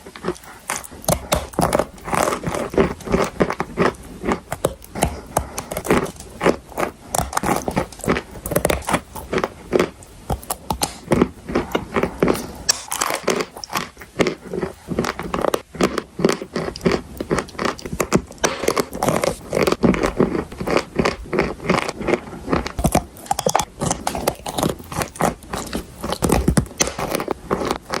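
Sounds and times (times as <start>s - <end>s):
crunching and chewing chalk: 0.0s - 28.0s.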